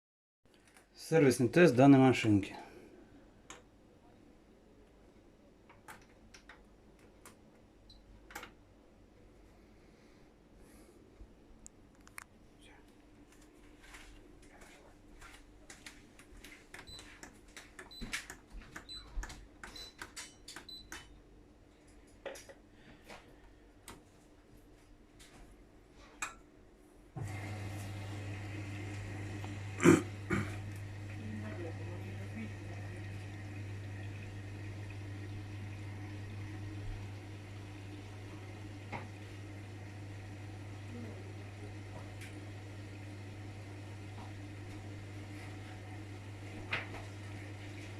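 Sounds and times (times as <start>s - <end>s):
faint steady hum: 20.7s - 47.9s
water noise: 27.2s - 47.9s.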